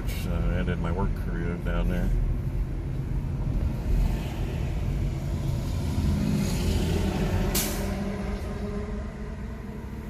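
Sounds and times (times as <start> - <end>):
road and tyre rumble: 0.0 - 10.0.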